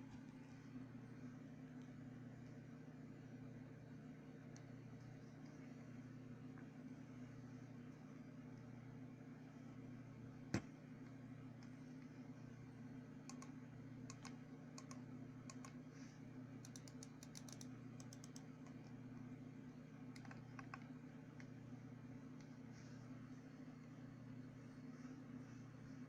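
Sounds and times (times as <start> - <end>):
steady low hum: 0.0 - 26.0
mechanical keyboard keystrokes: 16.6 - 18.8.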